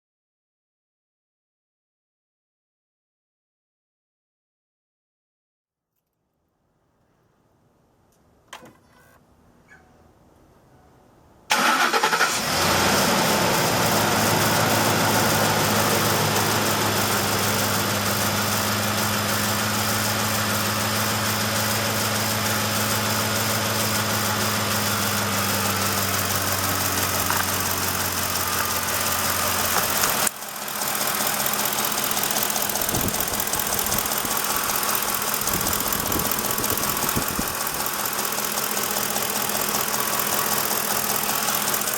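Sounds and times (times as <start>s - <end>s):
truck engine starting and idling: 11.5s - 41.9s
engine ticking: 11.6s - 41.9s.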